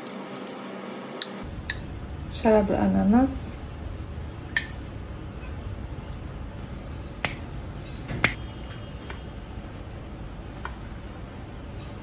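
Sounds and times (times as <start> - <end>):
kitchenware clicks and taps: 1.2 - 2.0, 4.6 - 4.9, 7.0 - 8.8
low background hum: 1.2 - 12.0.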